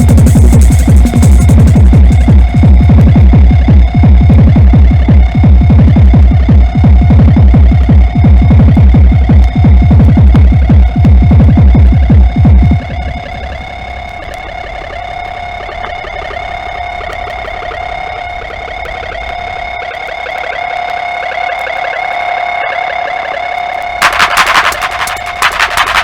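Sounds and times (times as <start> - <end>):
loud dance beat: 0.0 - 12.9, 24.0 - 26.0
fast ticking rhythmic pattern: 0.0 - 13.2, 24.0 - 26.0.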